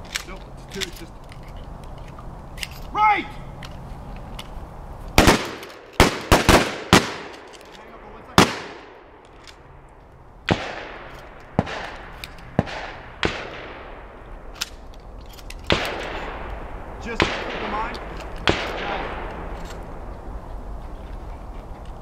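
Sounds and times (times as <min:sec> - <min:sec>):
shotguns firing: 0:05.2 - 0:14.8, 0:15.6 - 0:20.0.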